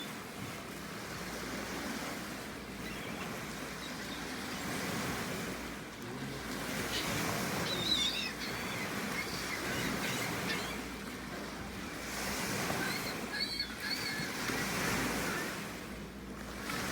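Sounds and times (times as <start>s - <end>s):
surf: 0.0s - 16.9s
wind: 0.0s - 16.9s
gull call: 6.8s - 11.0s, 12.5s - 15.6s.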